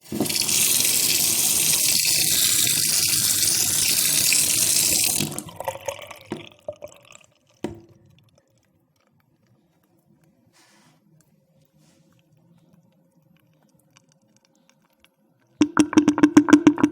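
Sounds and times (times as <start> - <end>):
water running into drain: 0.0 - 8.5, 15.6 - 16.9
water drops falling into drain: 3.2 - 8.5, 15.6 - 16.9.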